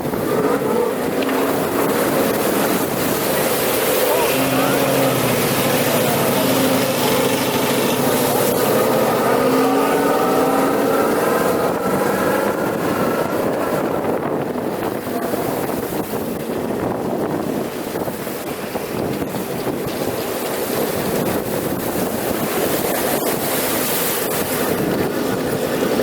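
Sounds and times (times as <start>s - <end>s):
truck engine whining drone: 0.0s - 14.9s
wind on microphone: 0.0s - 26.0s.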